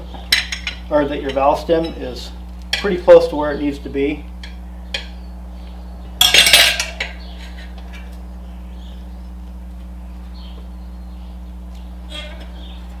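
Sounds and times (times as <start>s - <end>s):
steady low hum: 0.0s - 13.0s
metal tire irons clattering: 0.3s - 2.1s, 6.2s - 8.1s.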